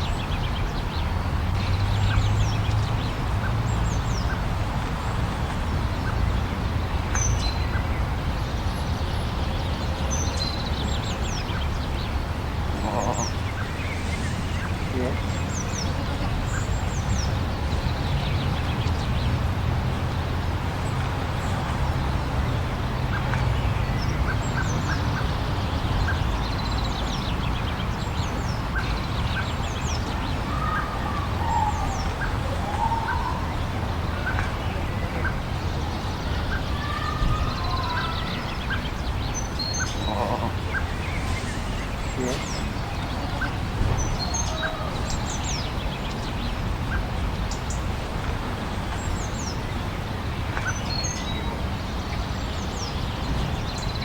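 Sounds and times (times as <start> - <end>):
birds chirping: 0.0 - 54.0
rushing wind: 0.0 - 54.0
warbling bird calls: 10.6 - 19.0, 24.0 - 47.9.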